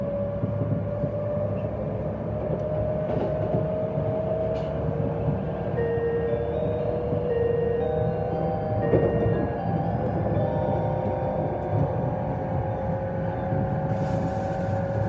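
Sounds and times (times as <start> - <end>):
train running rumble: 0.0 - 15.0
onboard chime: 5.8 - 12.3.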